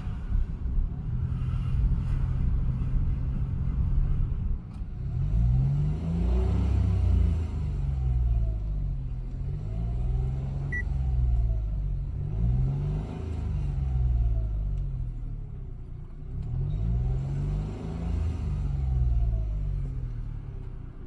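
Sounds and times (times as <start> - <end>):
car engine revving: 9.2 - 14.5.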